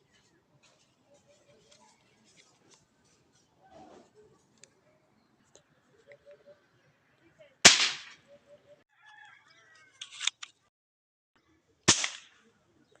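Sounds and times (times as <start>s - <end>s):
toy gun bang: 7.7s - 8.2s, 11.9s - 12.3s.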